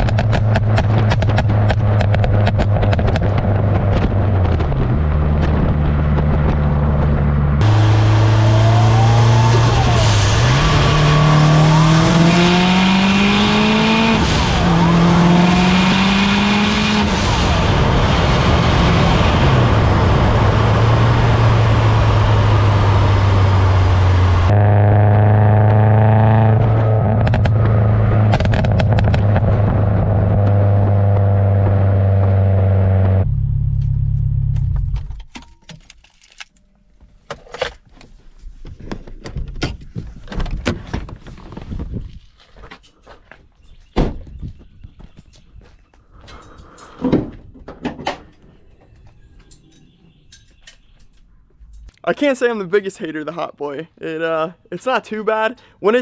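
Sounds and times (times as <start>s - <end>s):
turbocharged car engine accelerating: 0.0s - 35.1s.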